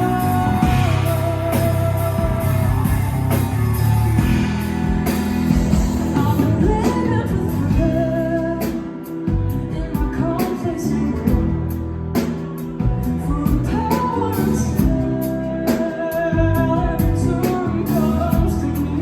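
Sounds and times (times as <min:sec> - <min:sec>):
person singing: 0:00.0 - 0:19.0
rock band playing: 0:00.0 - 0:19.0.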